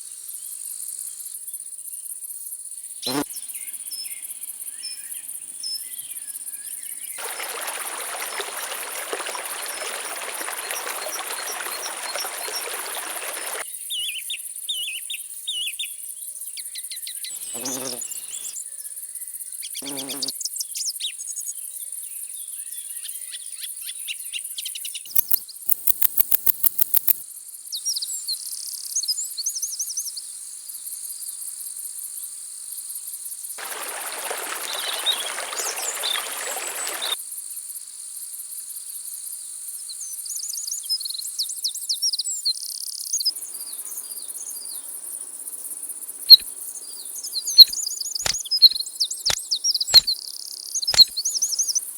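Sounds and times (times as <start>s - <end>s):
insects trilling: 3.0s - 3.3s, 7.2s - 13.6s, 17.3s - 18.5s, 19.8s - 20.3s, 25.1s - 27.2s, 33.6s - 37.2s, 43.3s - 51.9s
small birds chirping: 3.1s - 5.2s, 5.8s - 14.2s, 17.3s - 18.6s, 19.8s - 20.3s, 25.0s - 27.2s, 33.6s - 37.2s, 43.0s - 51.9s.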